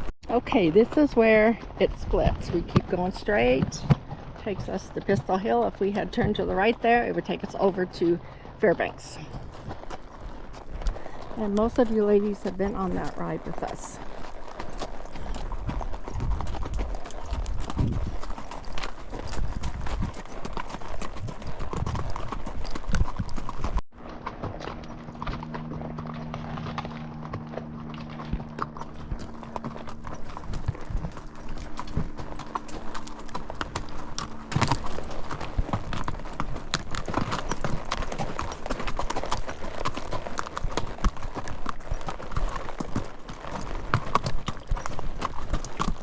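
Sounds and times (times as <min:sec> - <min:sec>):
horse hooves clip-clopping on dirt: 0:00.0 - 0:46.0
steady low hum: 0:24.0 - 0:36.9.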